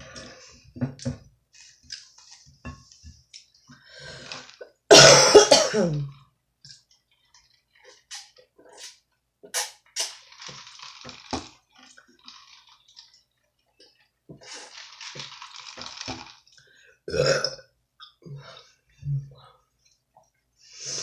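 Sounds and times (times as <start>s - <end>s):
loud burp: 4.9s - 6.1s, 17.1s - 17.7s.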